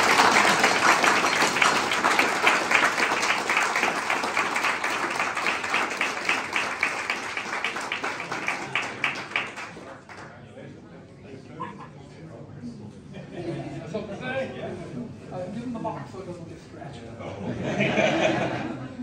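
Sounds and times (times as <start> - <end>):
audience applauding: 0.0 - 10.3.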